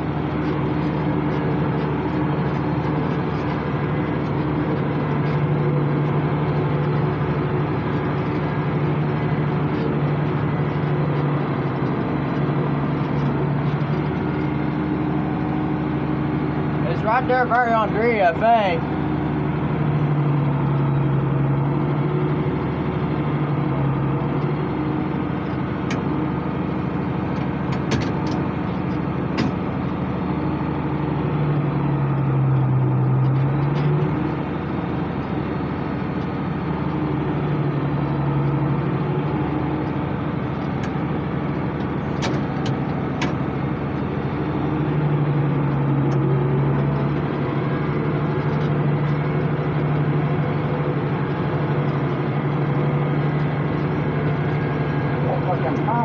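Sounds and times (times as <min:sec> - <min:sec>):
tractor diesel engine running: 0:00.0 - 0:56.0.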